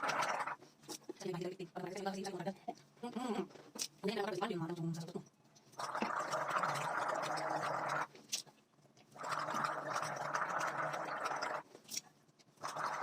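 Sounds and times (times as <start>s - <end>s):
person gargling: 3.0s - 3.5s, 5.8s - 8.1s, 9.2s - 11.6s, 12.6s - 13.0s.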